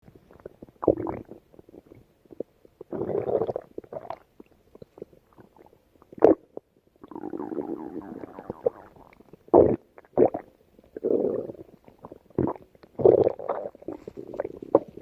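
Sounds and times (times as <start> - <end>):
stomach growling and gurgling: 0.1 - 15.0.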